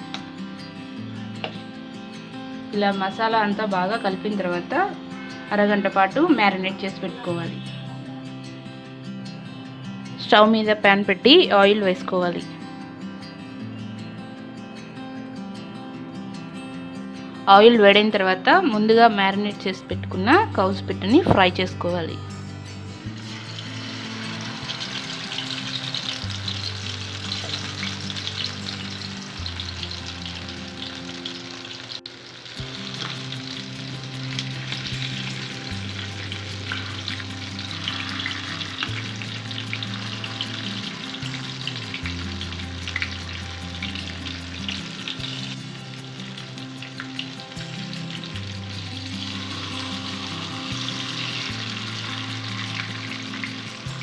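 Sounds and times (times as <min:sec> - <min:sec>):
quail sizzling in hot oil: 0:00.0 - 0:07.6, 0:23.0 - 0:54.0.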